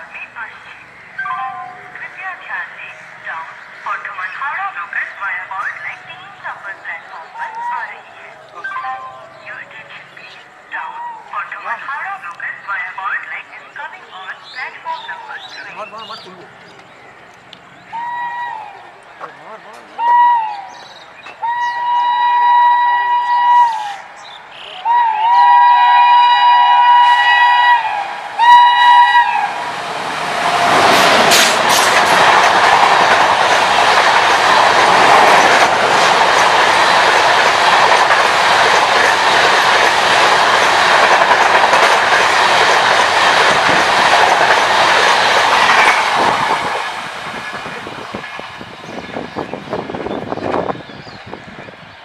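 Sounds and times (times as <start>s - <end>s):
train rushing past: 0.0s - 52.0s
locomotive horn blasts: 21.4s - 24.0s, 24.6s - 29.6s.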